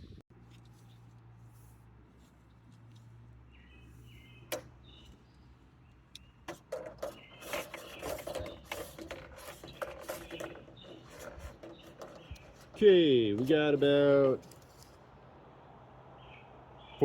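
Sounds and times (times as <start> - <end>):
tape measure clicking and rattling: 6.5 - 12.8.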